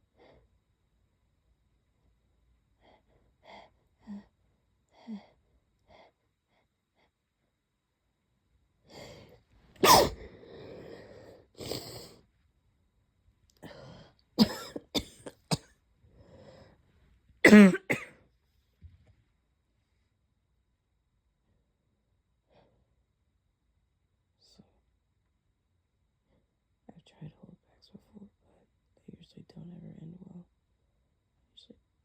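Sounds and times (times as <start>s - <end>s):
person coughing and sneezing: 9.8s - 10.3s, 14.4s - 15.7s, 17.4s - 18.2s.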